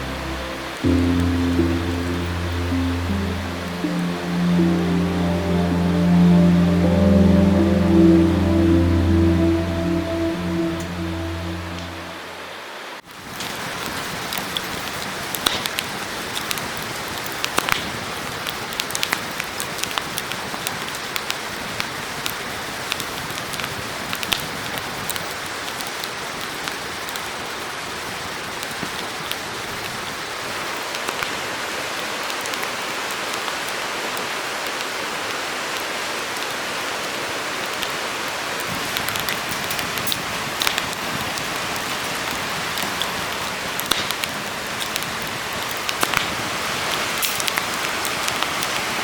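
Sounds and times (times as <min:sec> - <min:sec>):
wood fire crackling and popping: 0:42.8 - 0:46.4.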